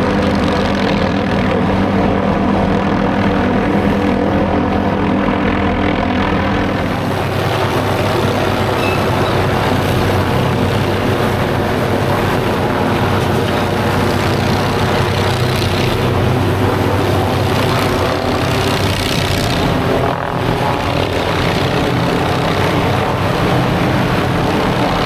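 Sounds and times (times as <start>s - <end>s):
helicopter rotor beat: 0.0s - 25.0s
turbine whine: 0.0s - 25.0s.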